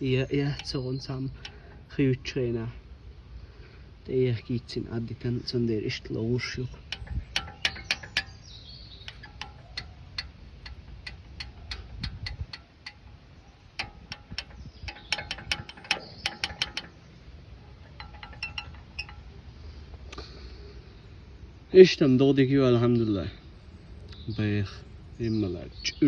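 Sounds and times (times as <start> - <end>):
brake pads clicking and rattling: 0.0 - 2.0, 5.9 - 20.5.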